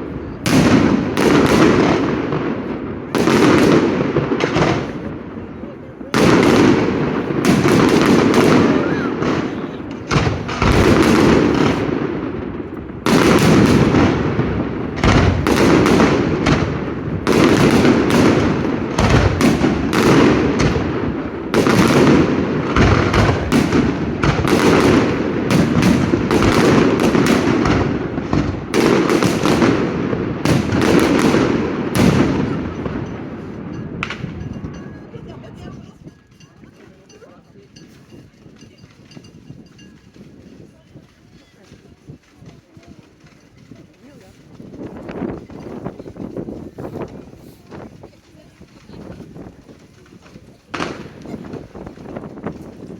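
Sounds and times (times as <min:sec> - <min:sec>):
fireworks bursting: 0:00.0 - 0:35.6, 0:44.7 - 0:52.9.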